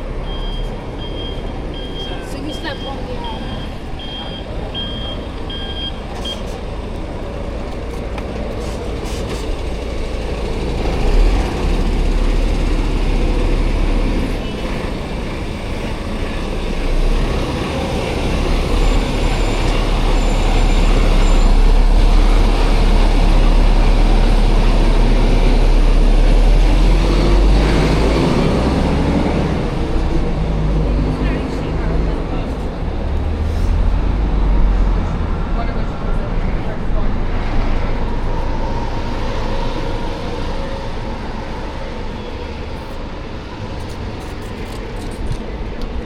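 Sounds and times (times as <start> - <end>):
diesel engine humming: 0.0 - 46.0
vehicle reversing beeps: 0.1 - 6.6.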